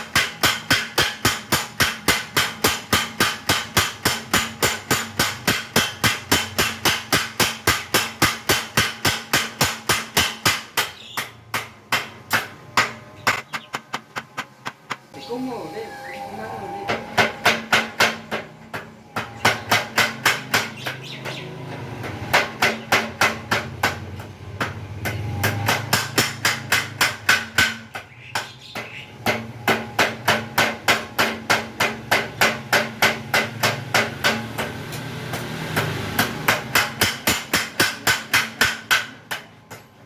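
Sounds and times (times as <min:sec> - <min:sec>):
power hammer striking: 0:00.0 - 0:15.2, 0:16.9 - 0:39.8.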